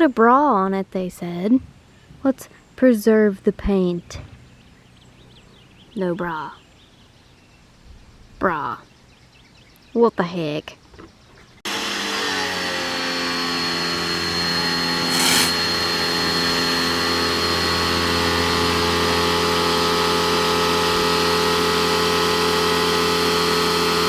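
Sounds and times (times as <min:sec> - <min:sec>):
pressure washer running: 0:11.7 - 0:24.0.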